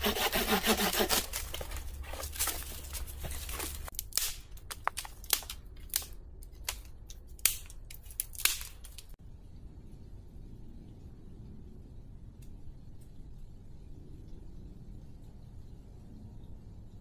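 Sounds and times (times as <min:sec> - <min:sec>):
wood cracking and snapping: 0:00.0 - 0:09.2
forest ambience: 0:00.0 - 0:17.0.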